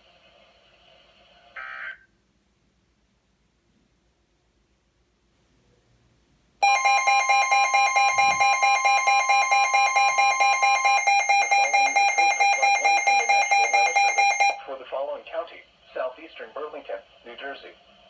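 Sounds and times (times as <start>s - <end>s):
pulsing electronic alarm tone: 6.6s - 14.6s.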